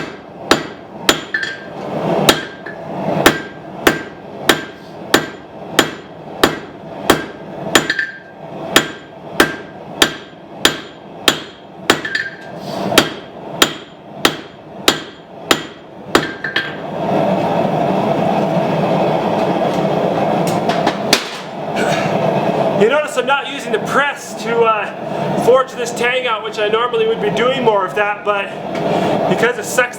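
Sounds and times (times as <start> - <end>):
hammer striking steel on anvil: 0.0 - 1.7, 2.3 - 16.8
steady rushing noise: 0.2 - 7.8, 12.5 - 29.9.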